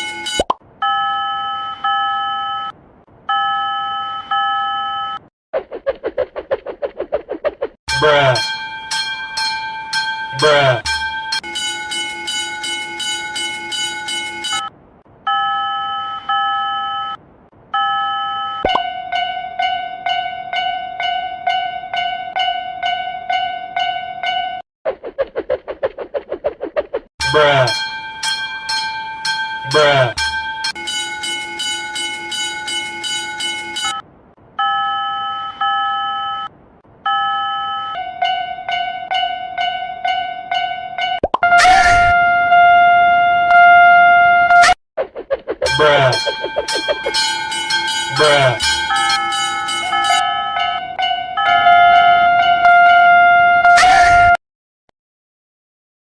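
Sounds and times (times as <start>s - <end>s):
railroad crossing bell ringing: 0.0s - 2.7s, 3.3s - 5.2s, 7.9s - 14.7s, 15.3s - 17.2s, 17.8s - 24.6s, 27.2s - 34.0s, 34.6s - 36.5s, 37.1s - 41.0s, 45.7s - 53.1s
steady electronic tone: 45.7s - 50.3s.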